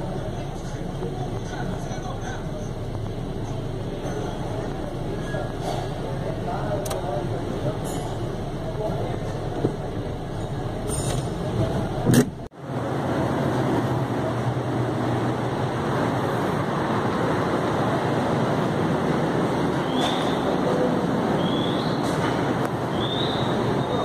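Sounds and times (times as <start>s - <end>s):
road traffic noise: 0.0s - 24.0s.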